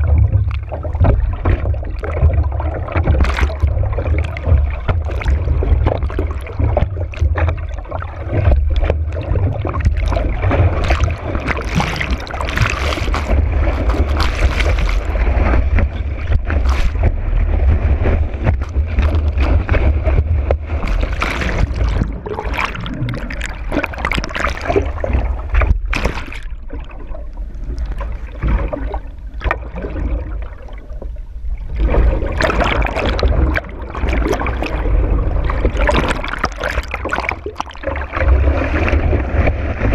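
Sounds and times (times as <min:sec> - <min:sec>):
wind rumble on microphone: 0:00.0 - 0:26.2
water rushing against board: 0:00.0 - 0:39.9.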